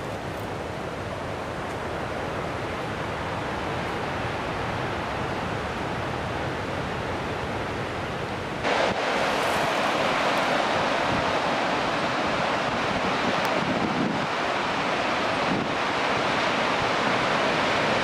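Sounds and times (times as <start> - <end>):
ocean surf washing: 0.0 - 18.0
wind: 0.0 - 18.0.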